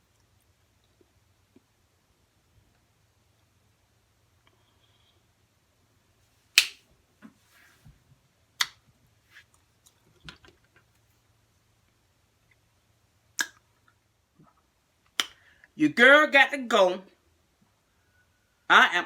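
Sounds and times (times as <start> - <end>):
sharp finger snaps: 6.6 - 6.8, 8.6 - 8.8, 13.4 - 13.6, 15.2 - 15.4
faint handling sounds: 7.2 - 8.2.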